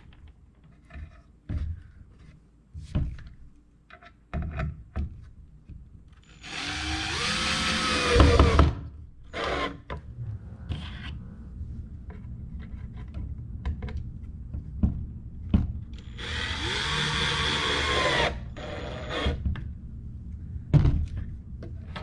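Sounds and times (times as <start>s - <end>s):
power drill spinning up: 6.3s - 8.6s, 16.0s - 19.4s.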